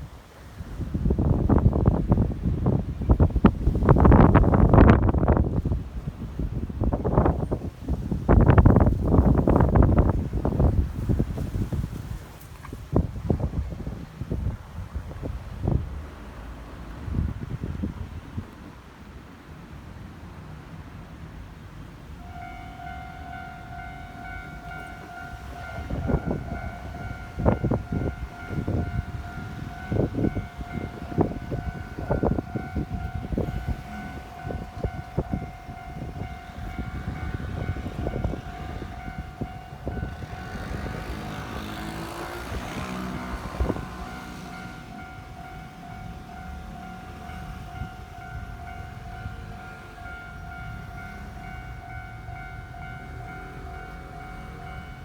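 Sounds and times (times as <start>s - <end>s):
train whine: 20.3s - 55.0s
level crossing alarm ringing: 22.2s - 55.0s
train wheels clacking on rails: 22.2s - 55.0s.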